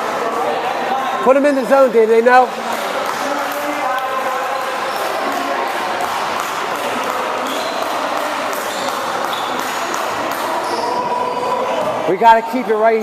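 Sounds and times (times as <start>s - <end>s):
background chatter: 0.0s - 13.0s
basketball dribbling: 2.5s - 10.8s
sneakers squeaking: 2.5s - 13.0s.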